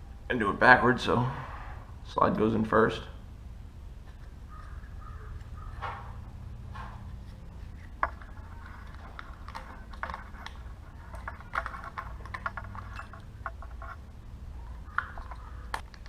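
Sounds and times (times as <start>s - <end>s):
steady low hum: 0.0s - 16.0s
small metal parts clicking and knocking: 7.7s - 16.0s.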